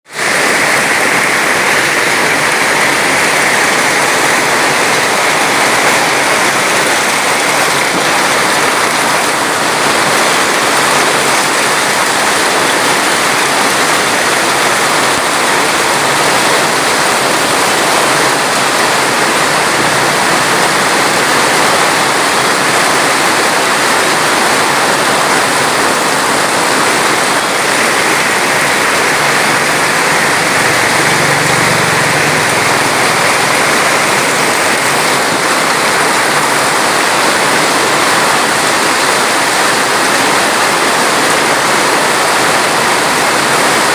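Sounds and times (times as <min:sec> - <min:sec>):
rushing water: 0:00.0 - 0:43.9.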